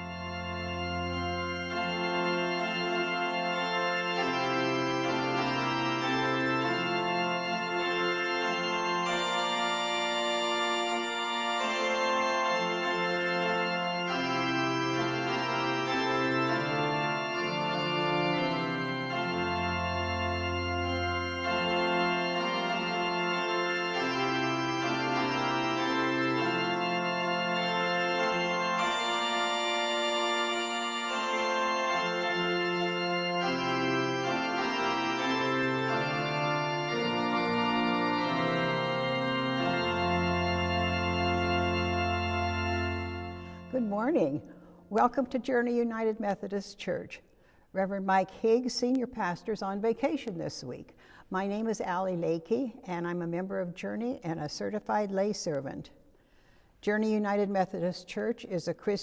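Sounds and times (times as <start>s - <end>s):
organ playing sustained chords: 0.0s - 46.6s.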